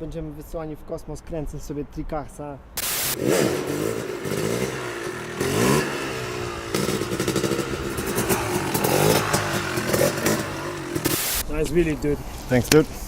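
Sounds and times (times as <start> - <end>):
motorcycle engine revving: 2.8 - 11.4.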